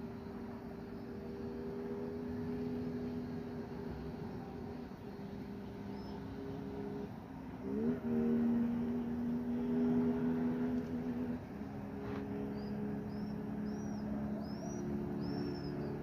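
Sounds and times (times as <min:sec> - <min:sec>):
small bird chirping: 0:05.6 - 0:06.5, 0:12.4 - 0:16.0.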